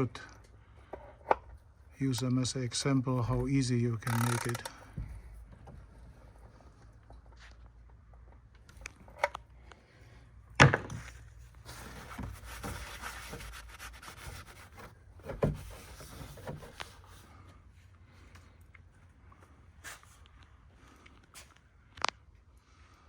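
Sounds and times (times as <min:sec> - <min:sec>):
rubbing and scraping: 0:11.5 - 0:17.6.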